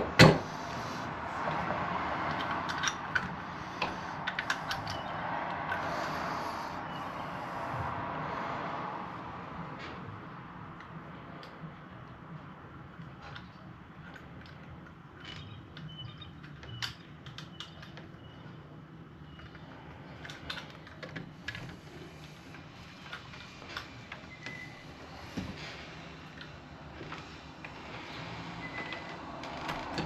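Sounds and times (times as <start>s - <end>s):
small clicks from lock parts: 2.3s - 5.0s, 13.0s - 18.1s.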